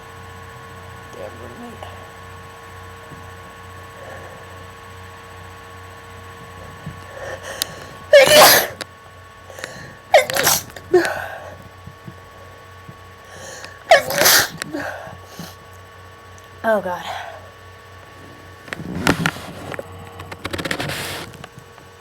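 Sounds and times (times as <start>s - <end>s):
short breaths: 3.9s - 4.6s, 6.6s - 8.8s, 9.5s - 11.7s, 13.3s - 15.6s
person sneezing: 4.0s - 4.5s, 6.6s - 8.8s, 9.5s - 11.6s, 13.3s - 15.6s, 16.7s - 17.5s.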